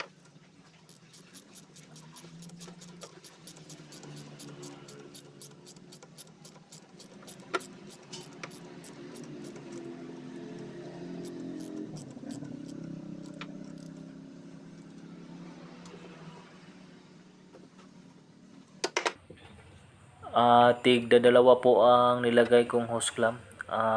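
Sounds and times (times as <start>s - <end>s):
engine hum: 0.0s - 18.8s.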